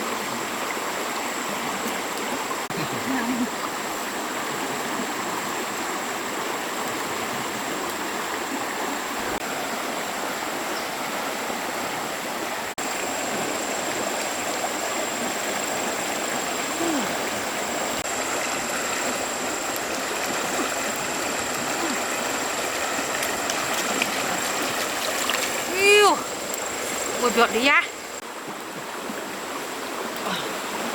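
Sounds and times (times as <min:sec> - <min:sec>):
stream water rushing: 0:00.0 - 0:30.9.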